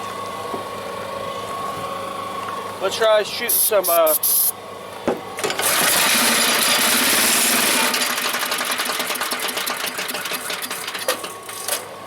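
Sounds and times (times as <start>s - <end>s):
gasoline engine sputtering: 5.5s - 11.6s.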